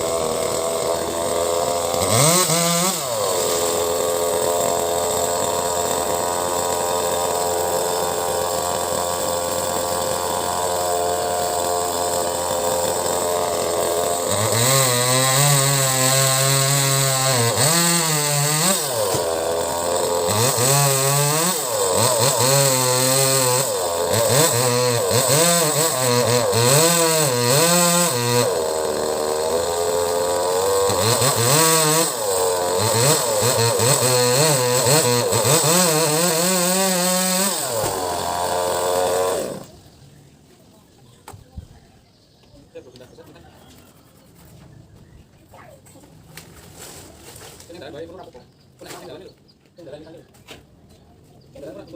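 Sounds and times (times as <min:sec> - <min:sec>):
chainsaw cutting wood: 0:00.0 - 0:39.8.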